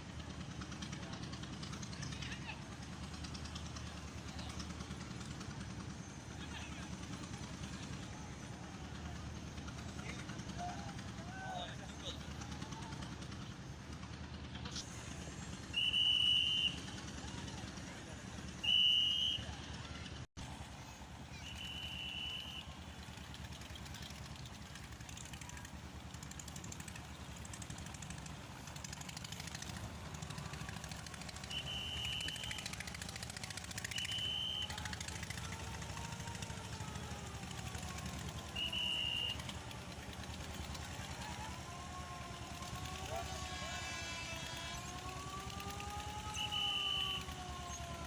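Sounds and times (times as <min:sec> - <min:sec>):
boat engine chugging: 0:00.0 - 0:48.0
short high whistle tone: 0:15.6 - 0:17.1, 0:18.6 - 0:19.7, 0:21.3 - 0:22.7, 0:31.4 - 0:32.7, 0:33.8 - 0:34.8, 0:38.5 - 0:39.4, 0:46.3 - 0:47.3.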